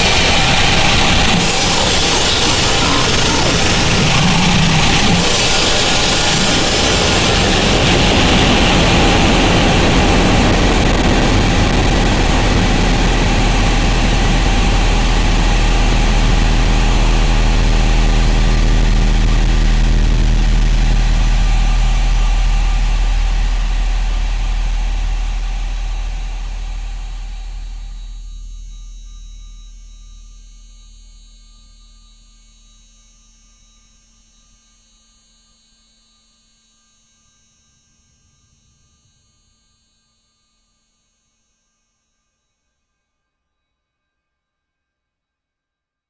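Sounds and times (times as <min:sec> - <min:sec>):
harsh static-like noise music: 0:00.0 - 0:34.7
steady low hum: 0:00.0 - 0:40.3.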